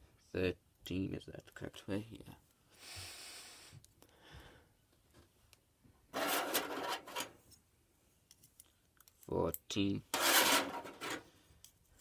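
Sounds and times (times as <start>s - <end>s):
fan motor part scraping: 6.2s - 7.4s, 10.1s - 11.3s.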